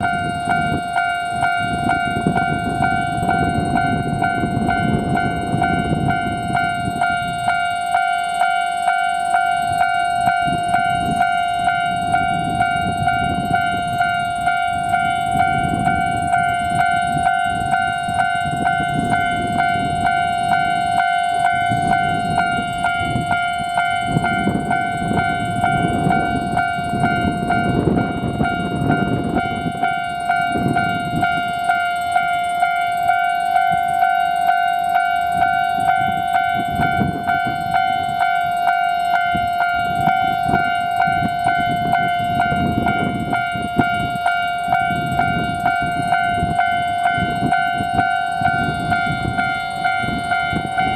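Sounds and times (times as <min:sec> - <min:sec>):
diesel railcar rumble: 0:00.0 - 0:50.9
level crossing bell ringing: 0:00.0 - 0:50.9.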